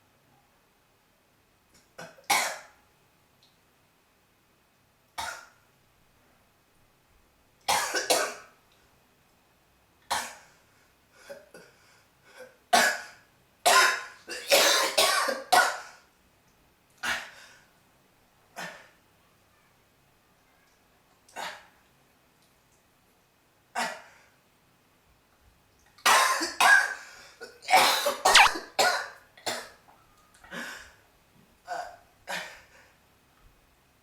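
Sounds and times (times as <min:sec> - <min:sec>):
person coughing: 0:13.7 - 0:15.8
person sneezing: 0:27.7 - 0:28.7.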